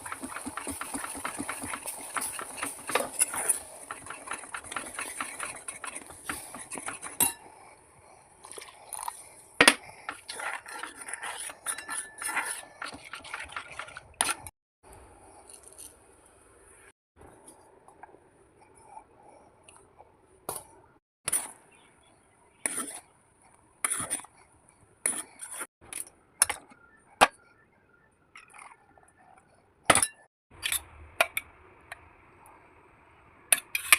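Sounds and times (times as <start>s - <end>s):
metal spoon scraping a pan: 0.0s - 7.6s, 9.6s - 14.5s, 22.6s - 23.1s
utensils clinking: 8.4s - 14.5s.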